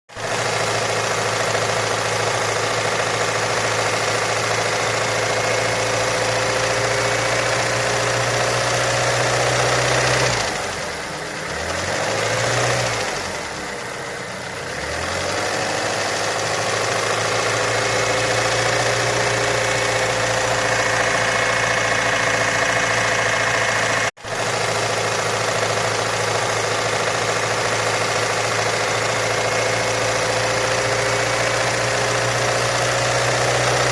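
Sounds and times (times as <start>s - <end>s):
car engine idling with knock: 13.2s - 33.0s.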